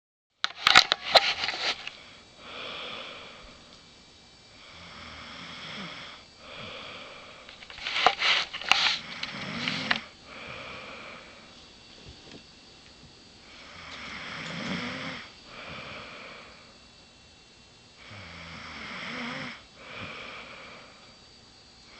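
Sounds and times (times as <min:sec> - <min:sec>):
woman snoring: 0:02.4 - 0:03.6, 0:04.6 - 0:11.5, 0:13.5 - 0:16.7, 0:18.0 - 0:21.1.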